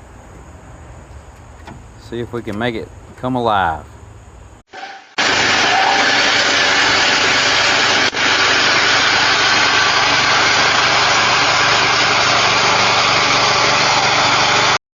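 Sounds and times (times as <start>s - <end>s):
mini bulldozer engine running: 5.2s - 14.8s.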